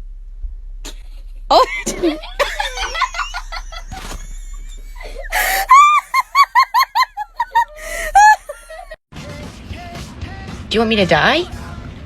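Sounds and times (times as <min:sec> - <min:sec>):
person laughing hard: 0:00.9 - 0:09.0
gasping breath: 0:04.9 - 0:05.8, 0:07.7 - 0:08.9.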